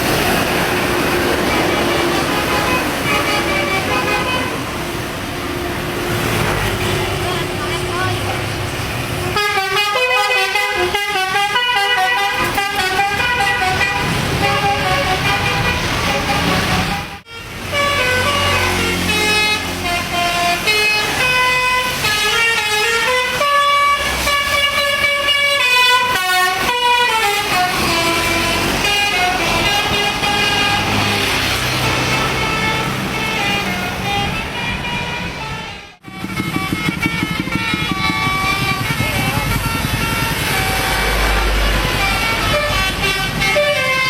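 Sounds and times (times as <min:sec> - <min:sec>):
bus horn playing a tune: 0:00.0 - 0:05.3, 0:09.1 - 0:44.0.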